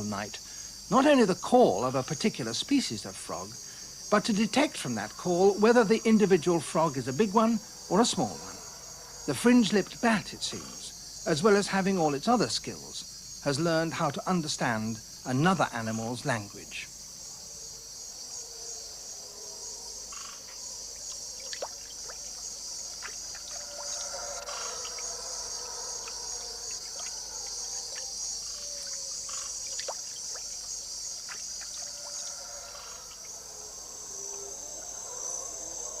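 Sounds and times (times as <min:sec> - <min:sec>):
high-pitched insect trilling: 0:00.0 - 0:36.0
frog calls: 0:17.5 - 0:36.0.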